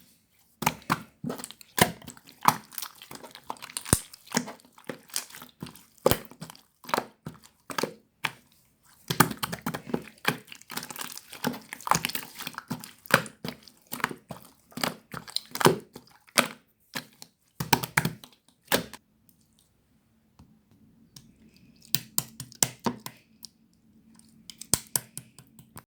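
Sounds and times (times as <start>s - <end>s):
bead slime crackling and popping: 2.7s - 4.5s.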